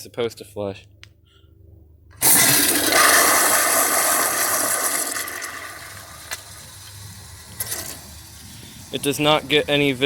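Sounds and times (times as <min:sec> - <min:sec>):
toilet flushing water rush: 0:02.2 - 0:09.0.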